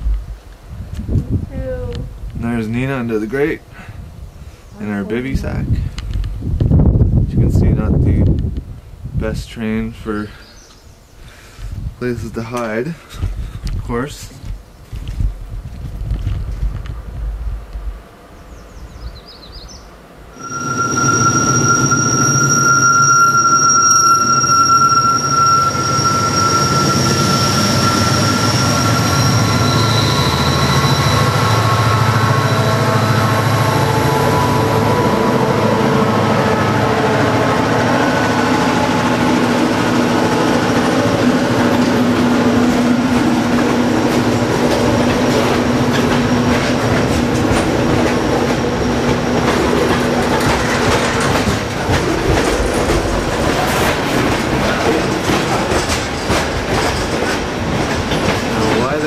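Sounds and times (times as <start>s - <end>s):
train rolling rumble: 12.4s - 19.0s, 20.0s - 59.0s
train wheels squealing on rails: 20.4s - 59.0s
wheels clacking over rail joints: 41.6s - 59.0s.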